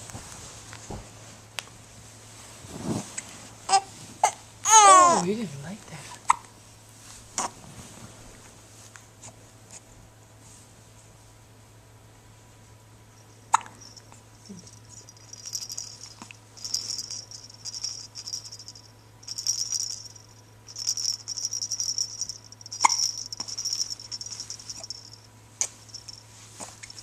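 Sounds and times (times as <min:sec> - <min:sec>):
pet hiccuping: 0:13.5 - 0:13.8
high-pitched scratchy rustling: 0:14.5 - 0:27.0.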